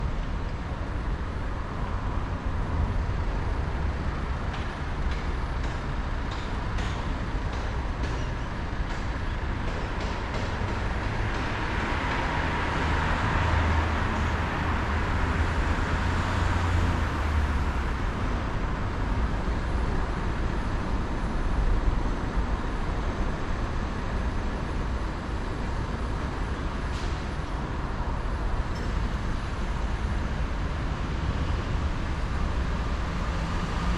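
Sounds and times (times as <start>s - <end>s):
road traffic rumble: 0.0s - 33.9s.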